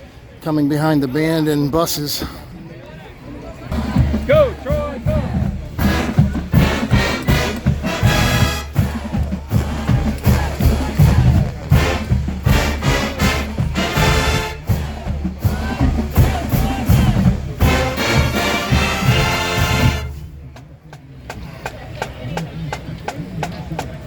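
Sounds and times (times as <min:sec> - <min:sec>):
brass horns: 0:03.7 - 0:20.4
marching drums beat: 0:03.7 - 0:24.0.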